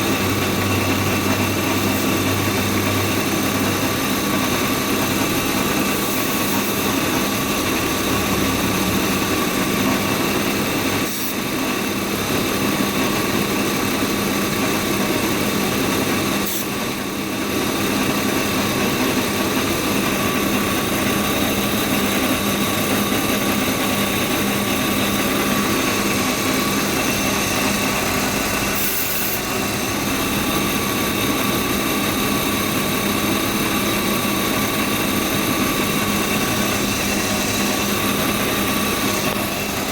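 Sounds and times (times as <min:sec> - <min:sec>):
car engine idling: 0:21.0 - 0:28.8.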